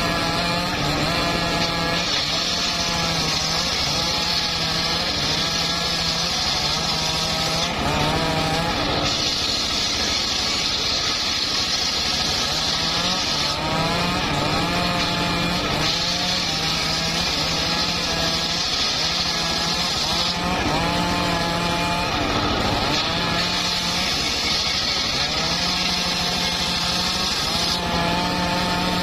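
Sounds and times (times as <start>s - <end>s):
sawmill blade cutting log: 0.0s - 29.0s.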